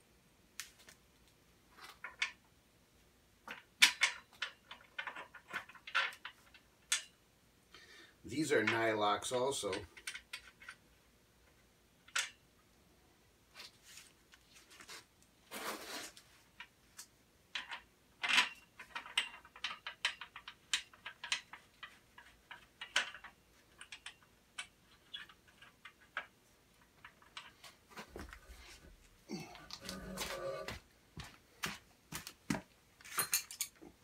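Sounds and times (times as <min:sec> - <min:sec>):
rustling scrape: 0:13.5 - 0:16.4.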